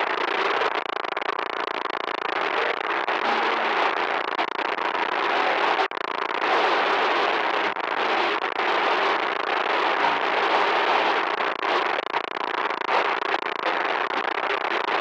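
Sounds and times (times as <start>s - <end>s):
harsh crackling static: 0.0s - 15.0s.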